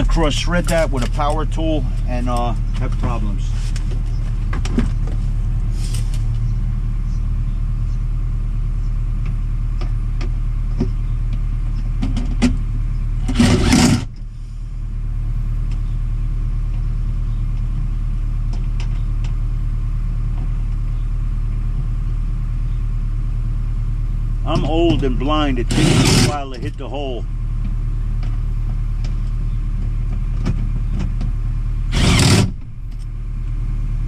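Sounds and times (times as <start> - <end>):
steady low hum: 0.0 - 34.0
power tool burst: 13.3 - 14.1, 25.7 - 26.5, 31.9 - 32.6.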